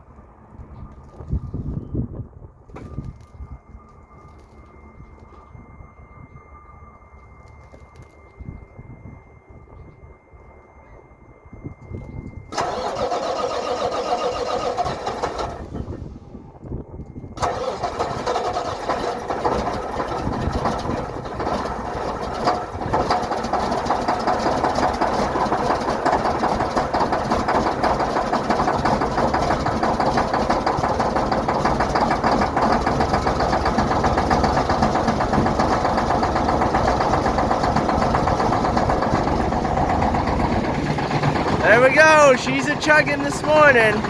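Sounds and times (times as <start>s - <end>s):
diesel truck engine chugging: 12.5s - 16.3s, 17.4s - 44.0s.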